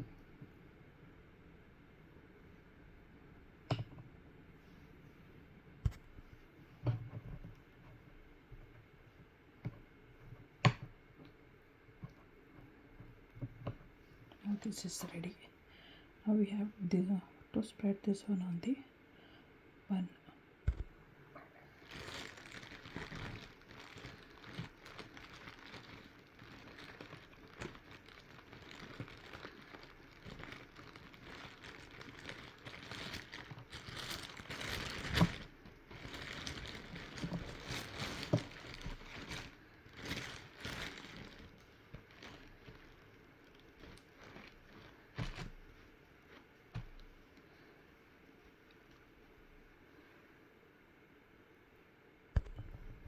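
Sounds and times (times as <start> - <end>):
crinkly rustling: 20.7 - 50.1.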